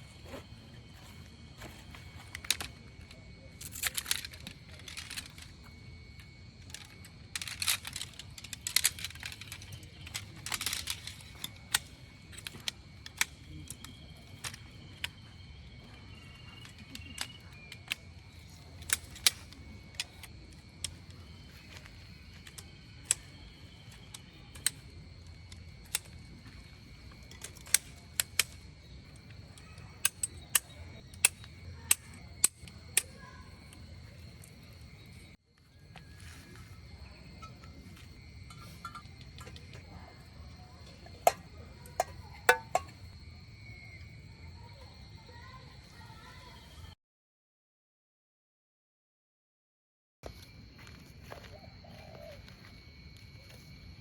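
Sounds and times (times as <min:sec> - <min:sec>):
high-pitched insect drone: 0:50.3 - 0:54.0.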